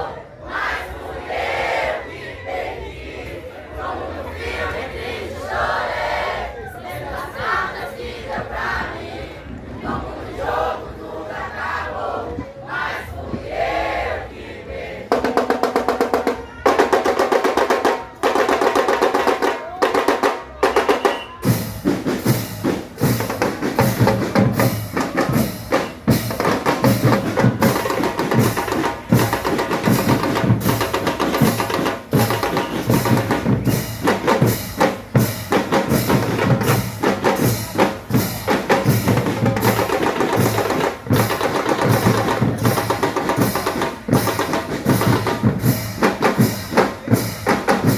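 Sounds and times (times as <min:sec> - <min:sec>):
marching band playing: 0:15.0 - 0:47.9
bass drum marching beat: 0:15.1 - 0:47.9
snare drum rolls: 0:15.1 - 0:47.9.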